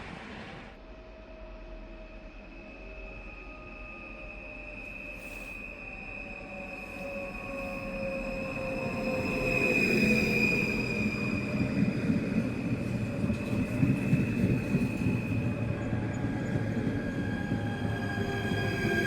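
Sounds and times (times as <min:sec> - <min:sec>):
train wheels rumbling on rails: 0:06.1 - 0:19.0.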